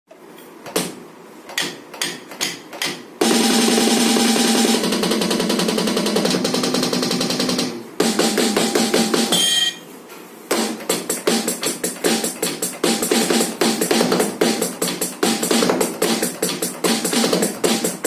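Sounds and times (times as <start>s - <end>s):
electronic drum pad hits: 3.2s - 9.5s, 10.5s - 18.0s.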